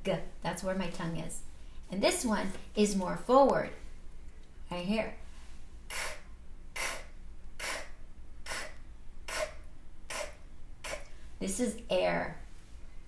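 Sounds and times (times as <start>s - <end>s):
woman making puffed k sounds: 5.9s - 11.1s.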